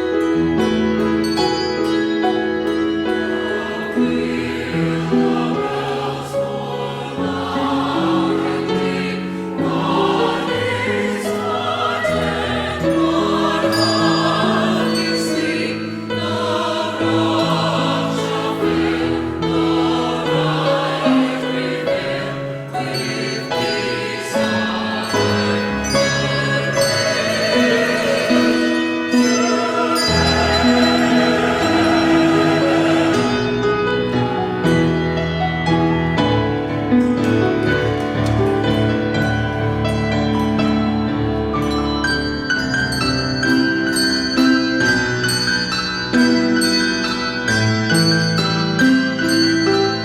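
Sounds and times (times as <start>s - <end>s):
church choir singing: 0.0s - 50.0s
instrumental accompaniment: 0.0s - 50.0s.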